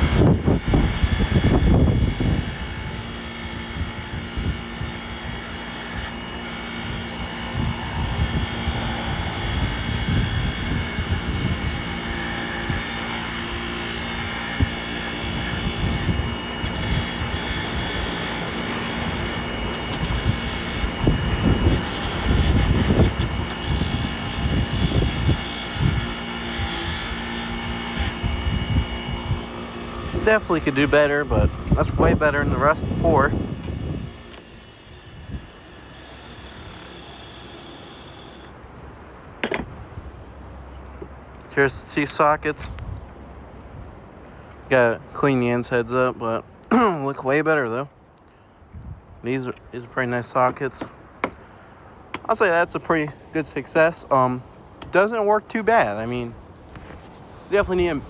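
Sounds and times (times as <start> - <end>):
wind buffeting microphone: 0.0 - 5.4, 6.0 - 37.5, 48.7 - 49.2
bench grinder motor hum: 0.0 - 38.6.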